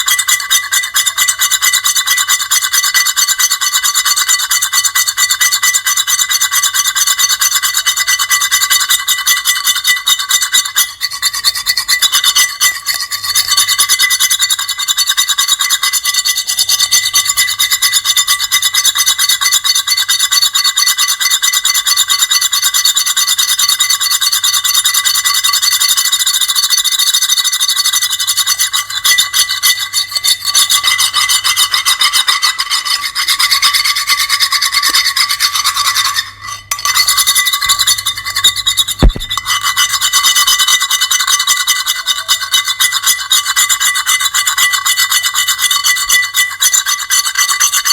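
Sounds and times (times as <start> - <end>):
high-pitched grating scrape: 6.6 - 17.7, 27.9 - 47.9.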